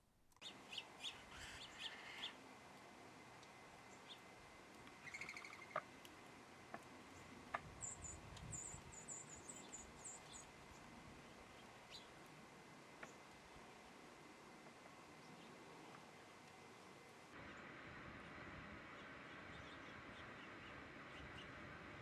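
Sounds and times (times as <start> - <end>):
songbird chirping trill: 0.4 - 2.4, 3.5 - 5.9, 6.7 - 12.3, 17.3 - 21.8
sharp bird clicks: 4.0 - 5.9.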